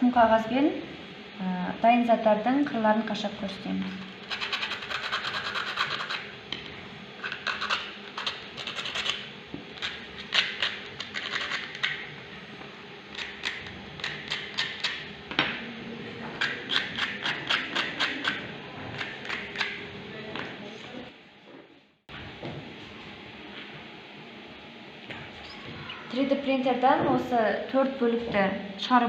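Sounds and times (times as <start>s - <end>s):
sandpaper scratching plastic: 4.2s - 6.2s, 7.2s - 9.2s, 9.8s - 11.9s.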